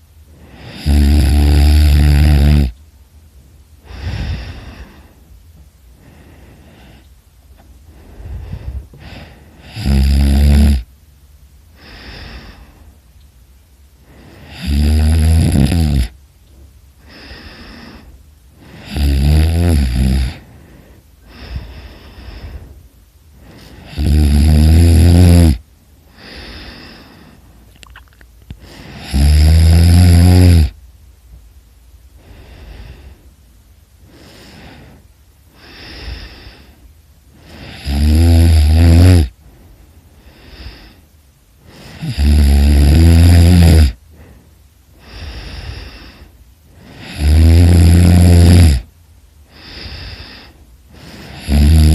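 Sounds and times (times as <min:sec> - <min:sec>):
soft breathing: 0:00.0 - 0:01.0, 0:03.4 - 0:09.9, 0:11.6 - 0:14.7, 0:16.0 - 0:19.1, 0:20.1 - 0:24.1, 0:25.6 - 0:29.2, 0:30.7 - 0:38.0, 0:39.3 - 0:42.2, 0:43.9 - 0:47.3, 0:48.8 - 0:51.7
person snoring loudly: 0:00.4 - 0:02.8, 0:03.8 - 0:05.1, 0:07.9 - 0:10.9, 0:14.1 - 0:16.2, 0:17.1 - 0:20.5, 0:23.4 - 0:25.6, 0:28.6 - 0:30.8, 0:37.4 - 0:39.4, 0:41.7 - 0:44.0, 0:45.0 - 0:48.9, 0:49.5 - 0:51.9.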